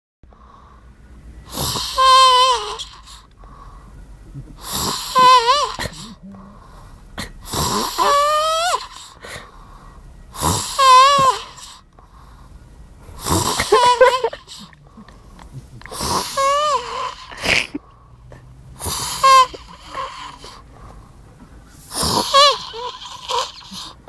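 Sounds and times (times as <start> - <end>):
person snoring loudly: 1.5 - 3.2, 4.4 - 6.6, 7.4 - 9.1, 10.4 - 11.8, 13.2 - 14.8, 15.8 - 17.7, 18.8 - 20.6, 21.8 - 24.0.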